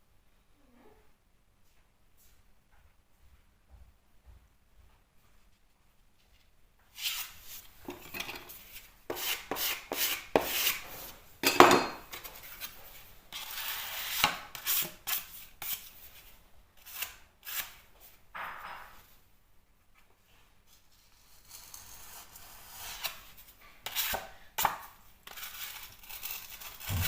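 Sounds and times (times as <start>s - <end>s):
hand tools scraping and knocking: 7.0s - 15.8s, 26.6s - 27.0s.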